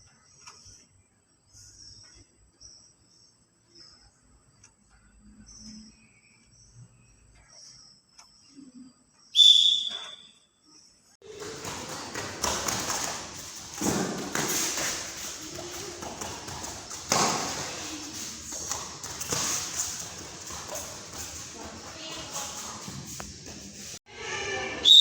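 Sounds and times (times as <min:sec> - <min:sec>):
scuffing noise: 0:11.2 - 0:24.0.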